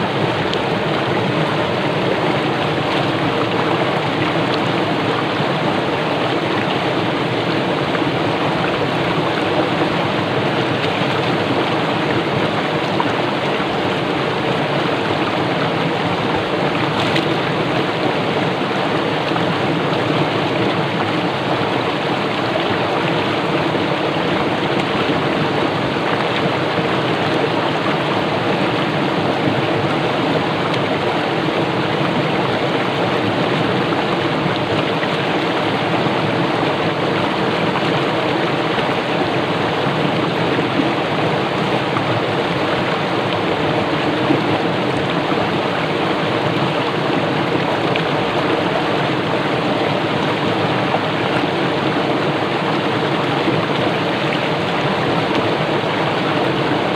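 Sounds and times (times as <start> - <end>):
stream rushing over rocks: 0.0 - 56.9.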